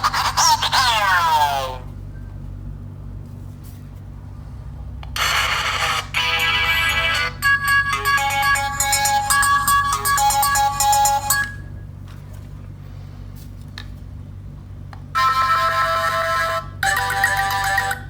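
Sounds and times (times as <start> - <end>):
ringtone melody through phone speaker: 5.2 - 11.6, 15.2 - 18.0.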